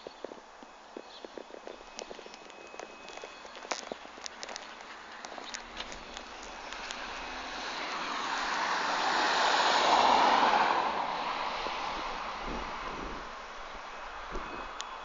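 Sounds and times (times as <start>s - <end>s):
light footstep clicks: 0.0s - 7.4s
car driving past: 5.6s - 14.7s.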